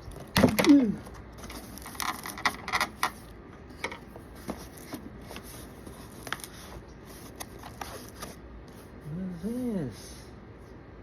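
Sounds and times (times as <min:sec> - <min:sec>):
packaging rustling: 0:00.1 - 0:08.4.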